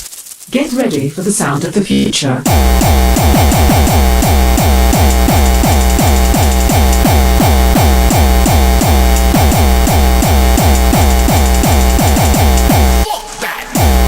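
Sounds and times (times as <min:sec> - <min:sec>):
noisy synths: 0:02.4 - 0:13.0, 0:13.8 - 0:14.0
distorted kick drum: 0:02.5 - 0:13.0, 0:13.8 - 0:14.0.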